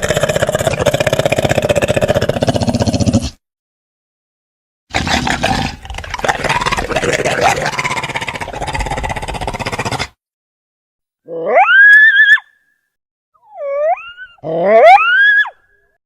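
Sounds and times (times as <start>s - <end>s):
electronic creature roar: 0.0s - 3.3s.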